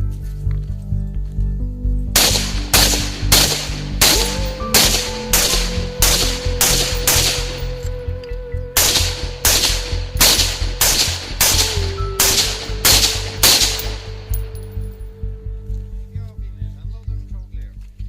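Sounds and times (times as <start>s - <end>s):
background music: 0.0s - 18.0s
rifle shots: 2.2s - 7.8s, 8.8s - 14.6s.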